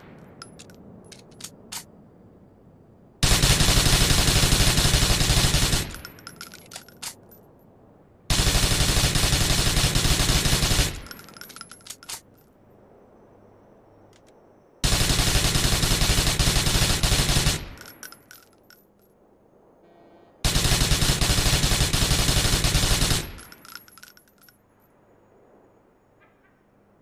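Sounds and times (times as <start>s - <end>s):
spent casings tinkling: 0.0s - 2.0s, 3.9s - 7.7s, 10.0s - 12.6s, 14.0s - 19.2s, 20.6s - 25.0s
submachine gun full-auto bursts: 3.2s - 6.0s, 8.3s - 11.3s, 14.8s - 18.1s, 20.4s - 23.7s.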